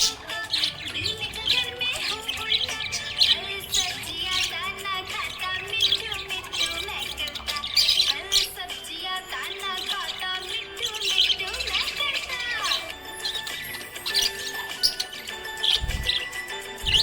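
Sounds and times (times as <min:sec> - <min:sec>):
budgerigars chirping and warbling: 0:00.0 - 0:17.0.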